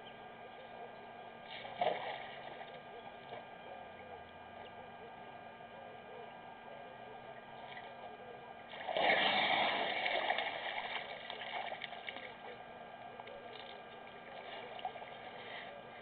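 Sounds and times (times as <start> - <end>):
elephant drinking water splashing: 8.7 - 12.3.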